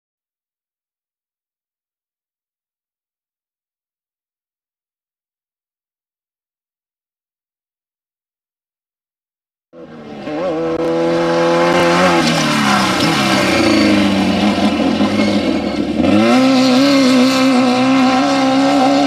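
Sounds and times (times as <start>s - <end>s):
race vehicle engine running: 9.8s - 19.0s.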